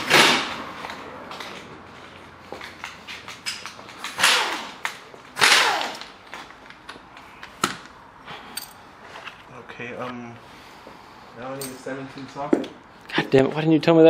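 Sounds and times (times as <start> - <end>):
tools clicking and knocking: 2.8 - 9.4.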